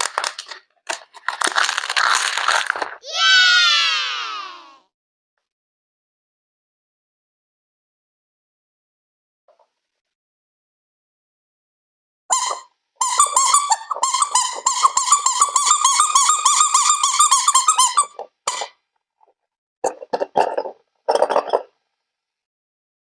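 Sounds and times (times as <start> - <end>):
high squeaks: 12.3 - 18.7.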